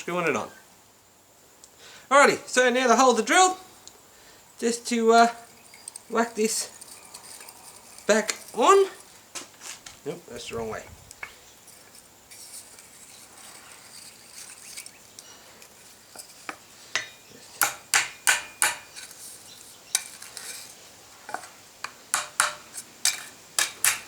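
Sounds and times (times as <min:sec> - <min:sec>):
metallic clinks and knocks: 0:05.4 - 0:09.1, 0:11.2 - 0:19.2, 0:22.2 - 0:24.0.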